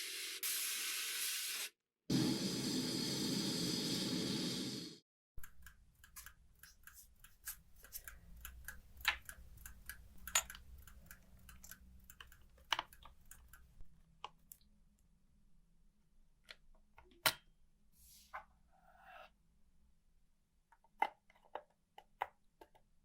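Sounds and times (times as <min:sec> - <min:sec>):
loud hiss: 0:00.0 - 0:05.0.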